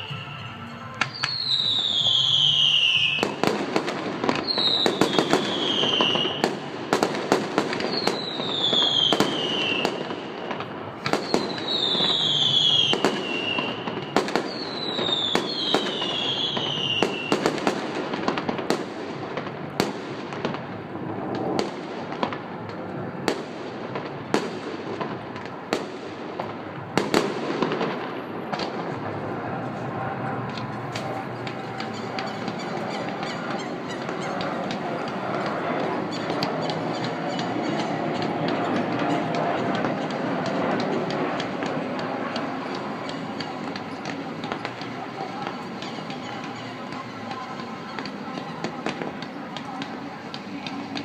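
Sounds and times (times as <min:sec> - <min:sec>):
firework bangs and crackles: 0:00.0 - 0:51.0
whistling fireworks: 0:00.0 - 0:51.0.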